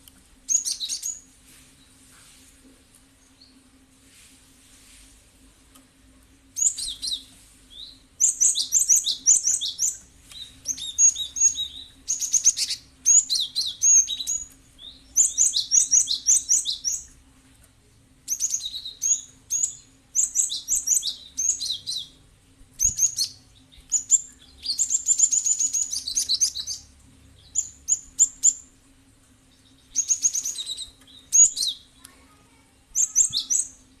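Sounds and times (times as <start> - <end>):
faint steady hum: 0.0 - 34.0
bird chattering song: 0.5 - 1.3, 6.6 - 17.1, 18.3 - 22.2, 22.8 - 28.7, 29.5 - 32.1, 32.9 - 34.0.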